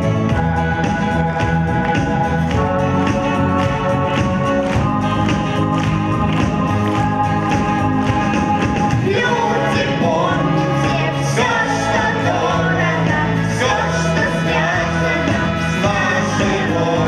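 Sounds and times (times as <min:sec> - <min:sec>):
song over sound system: 0:00.0 - 0:17.0
person singing: 0:09.0 - 0:17.0.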